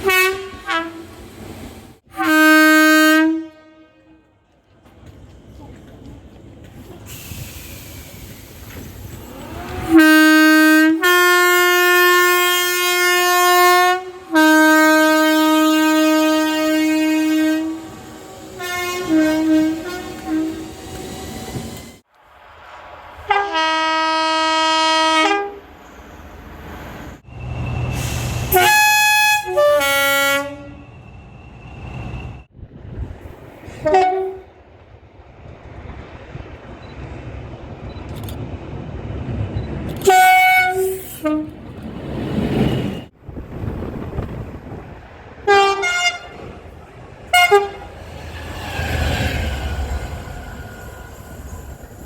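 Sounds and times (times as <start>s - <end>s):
train horn blasts: 0.0s - 1.2s, 2.1s - 4.4s, 9.4s - 20.8s, 23.3s - 25.8s, 28.5s - 30.9s, 33.7s - 34.6s, 40.0s - 41.6s, 45.4s - 46.5s, 47.3s - 49.7s
train rumble: 0.0s - 52.0s.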